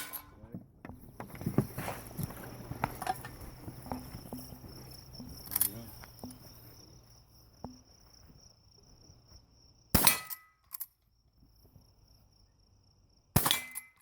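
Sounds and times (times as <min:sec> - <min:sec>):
rifle shots: 0:10.0 - 0:10.4, 0:13.4 - 0:14.0.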